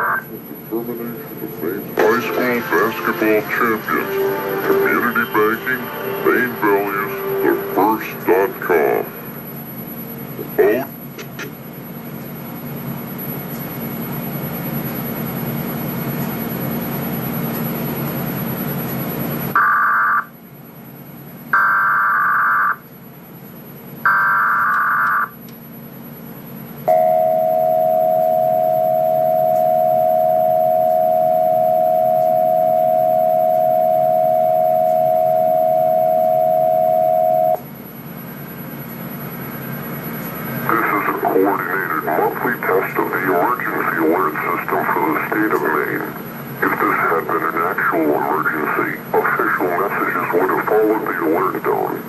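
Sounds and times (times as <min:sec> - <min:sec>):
two-tone attention signal: 0:01.4 - 0:09.6, 0:26.9 - 0:37.6.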